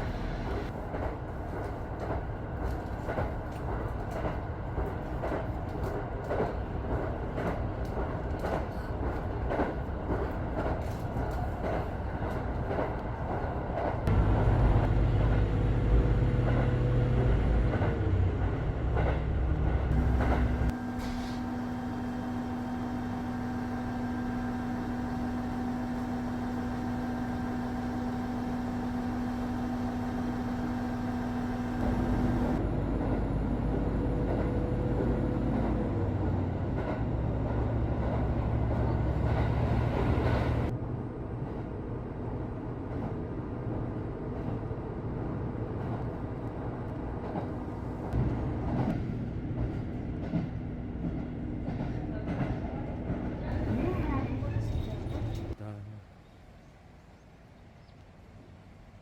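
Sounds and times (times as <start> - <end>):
train wheels clacking on rails: 0.0 - 20.8, 47.2 - 55.6
low train rumble: 0.0 - 59.0.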